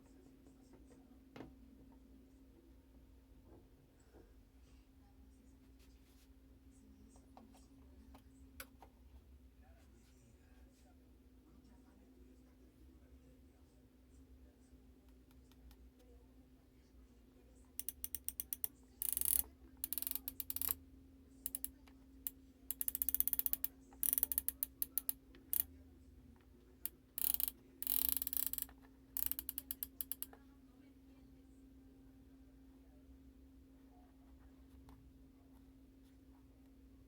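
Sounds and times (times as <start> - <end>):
faint steady hum: 0.0 - 37.0
screwdriver clicking: 17.8 - 20.8, 22.7 - 25.7, 27.2 - 30.3.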